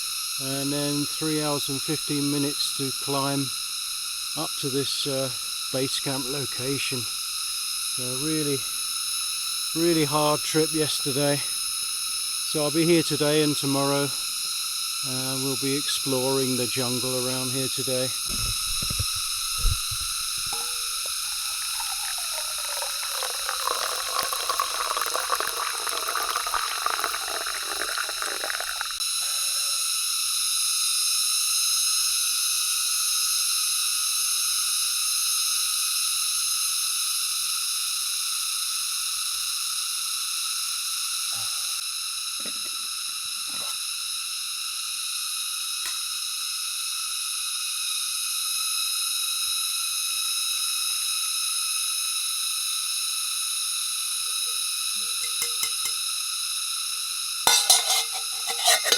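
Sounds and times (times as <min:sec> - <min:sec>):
hot water pouring into cup: 0:08.0 - 0:14.1, 0:15.4 - 0:30.0, 0:54.1 - 0:58.9.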